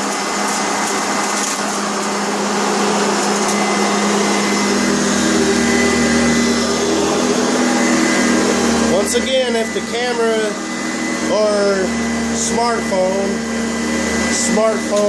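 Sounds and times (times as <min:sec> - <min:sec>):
vacuum cleaner running: 0:00.0 - 0:15.0
person talking: 0:08.8 - 0:10.6, 0:11.2 - 0:13.5, 0:14.1 - 0:15.0.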